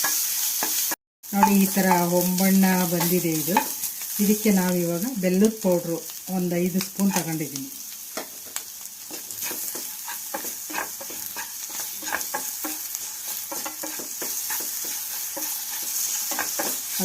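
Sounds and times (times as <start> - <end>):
spoon scraping a pan: 0.0 - 4.3, 9.1 - 17.0
food sizzling in a pan: 0.0 - 17.0.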